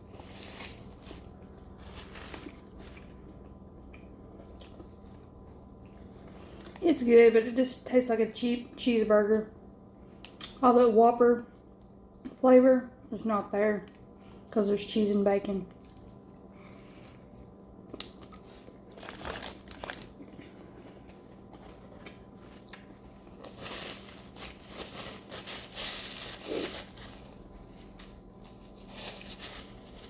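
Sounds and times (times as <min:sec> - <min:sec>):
wrapper crinkling and rustling: 0:00.0 - 0:03.3, 0:18.0 - 0:20.4, 0:21.6 - 0:30.0
chewing food: 0:02.9 - 0:06.8, 0:15.7 - 0:19.0.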